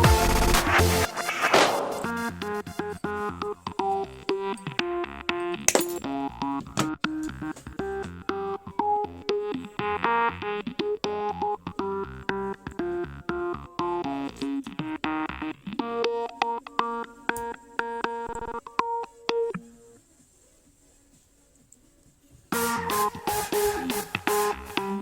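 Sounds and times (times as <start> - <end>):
electronic synthesizer music: 22.5 - 25.0.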